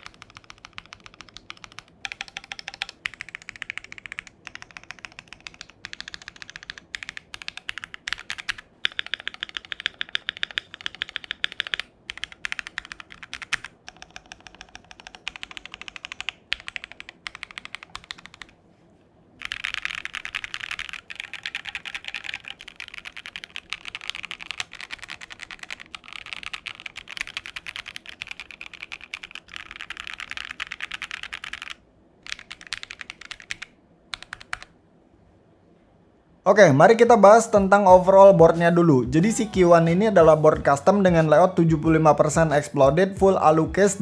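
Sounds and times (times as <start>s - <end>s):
mechanical keyboard typing: 0.0s - 18.5s, 19.4s - 34.7s.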